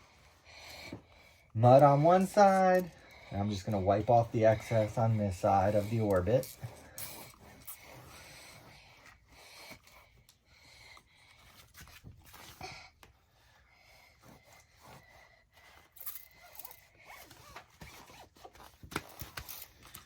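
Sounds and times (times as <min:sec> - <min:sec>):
towel rubbing a tire: 0:03.4 - 0:09.0.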